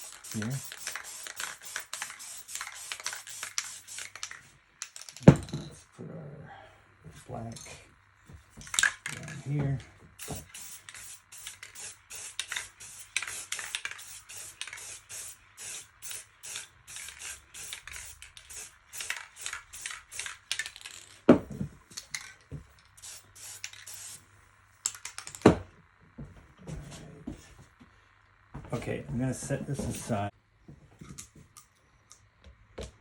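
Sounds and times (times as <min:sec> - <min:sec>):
spray-paint can hissing bursts: 0:00.0 - 0:04.5, 0:10.2 - 0:21.0, 0:23.0 - 0:25.4.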